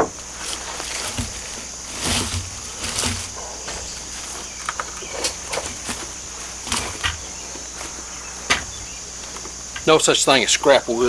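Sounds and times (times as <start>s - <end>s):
lumber knocking and thudding: 0.0s - 8.9s
insects chirring: 0.0s - 11.0s.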